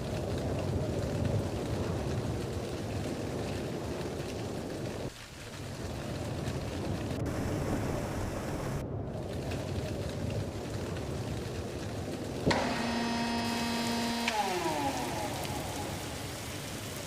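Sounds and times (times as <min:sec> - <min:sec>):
strong wind: 0:00.0 - 0:12.8
rain: 0:00.0 - 0:17.0.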